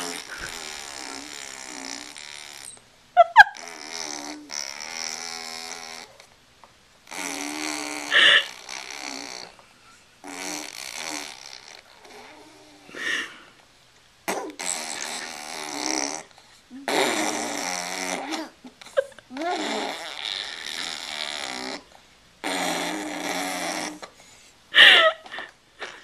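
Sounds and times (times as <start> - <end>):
child making buzzing vocal noises: 0.0 - 2.7, 3.6 - 6.1, 14.3 - 24.1.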